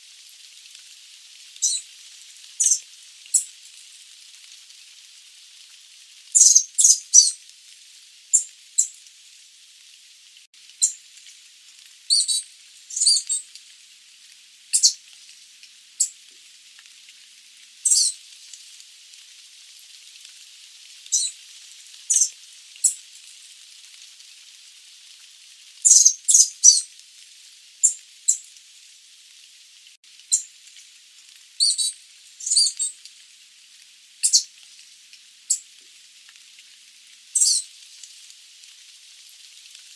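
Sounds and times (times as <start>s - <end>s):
steady background hiss: 0.0s - 9.6s.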